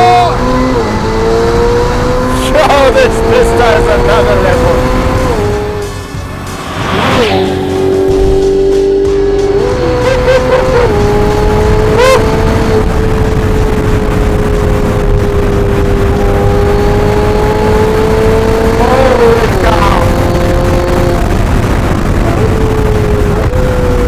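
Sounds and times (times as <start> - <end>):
car engine at high revs: 0.0 - 24.0
wind and road rumble: 0.0 - 24.0.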